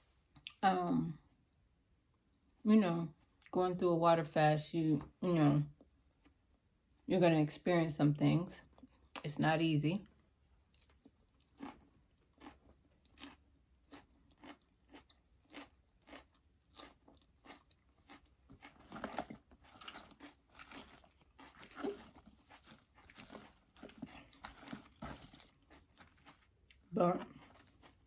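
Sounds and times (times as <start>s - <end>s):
crunching raw vegetables: 10.6s - 28.0s.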